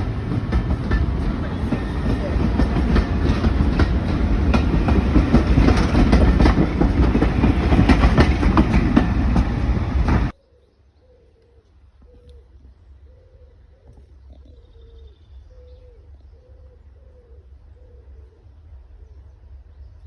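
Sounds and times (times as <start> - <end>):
train wheels clicking over rail joints: 0.0 - 10.3
pigeon cooing: 10.4 - 18.5.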